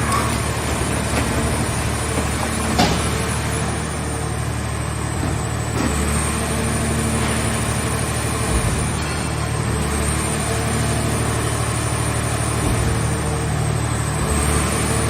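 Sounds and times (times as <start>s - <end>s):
baler engine running under load: 0.0s - 15.0s.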